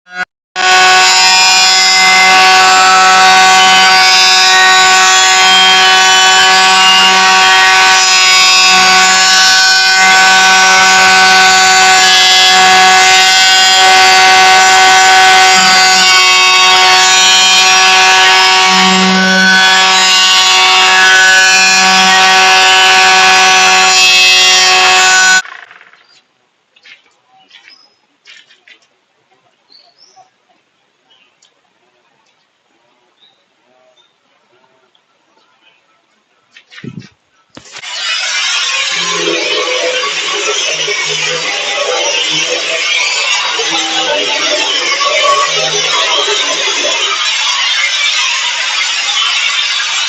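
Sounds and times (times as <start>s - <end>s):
power tool whining: 0.1s - 25.4s, 37.6s - 50.0s.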